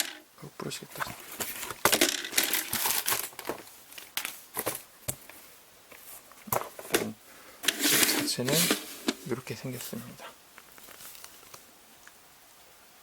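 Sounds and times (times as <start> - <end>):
packaging being torn and crumpled: 2.3 - 4.4, 10.6 - 11.6.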